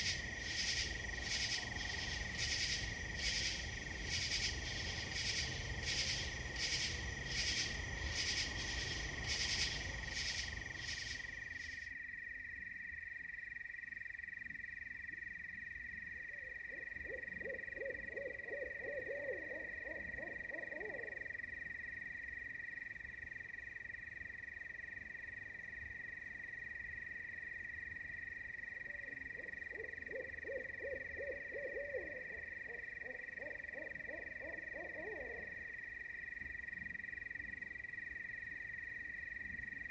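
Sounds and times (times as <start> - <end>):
high insect drone: 0.0 - 39.9
pulsing insect call: 0.0 - 39.9
frog trilling: 29.0 - 35.7.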